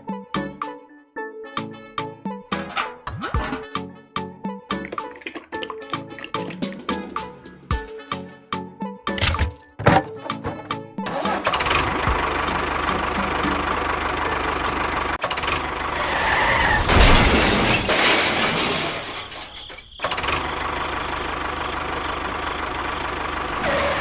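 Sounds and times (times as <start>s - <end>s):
small engine running: 10.3s - 16.2s, 20.0s - 24.0s.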